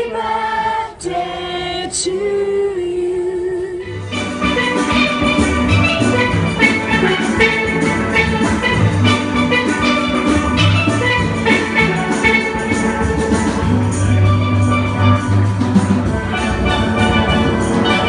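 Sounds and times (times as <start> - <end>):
lively instrumental music: 3.8 - 18.0.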